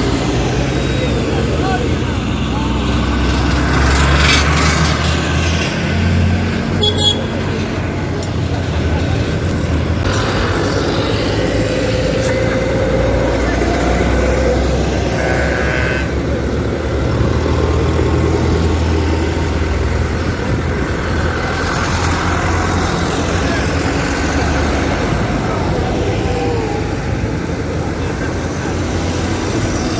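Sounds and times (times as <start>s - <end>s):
tractor engines droning: 0.0s - 29.9s.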